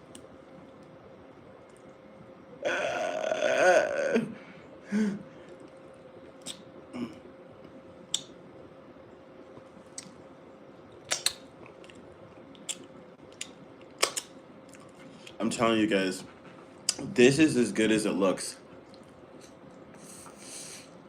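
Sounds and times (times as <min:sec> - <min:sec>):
wet chewing smacks and clicks: 0:05.5 - 0:06.7, 0:09.9 - 0:10.2, 0:10.9 - 0:15.4, 0:18.8 - 0:19.9.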